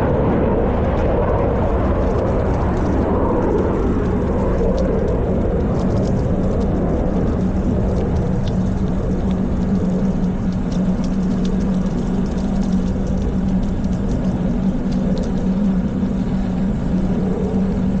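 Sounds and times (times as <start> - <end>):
low engine rumble: 0.0 - 18.0.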